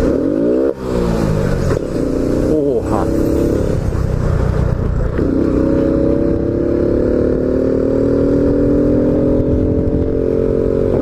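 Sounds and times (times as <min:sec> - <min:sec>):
motorcycle engine accelerating: 0:00.0 - 0:11.0
wind rumble on microphone: 0:03.1 - 0:11.0.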